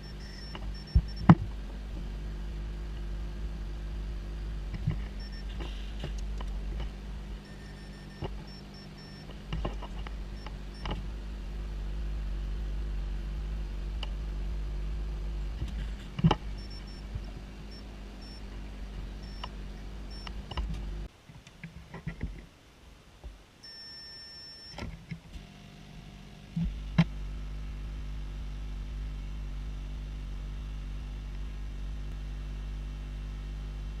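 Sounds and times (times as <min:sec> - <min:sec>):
short electronic beeps: 0:00.0 - 0:01.3, 0:05.2 - 0:05.6, 0:07.4 - 0:09.3, 0:16.6 - 0:18.5, 0:19.2 - 0:19.5, 0:20.1 - 0:20.4, 0:23.6 - 0:24.8
steady low hum: 0:00.0 - 0:34.0.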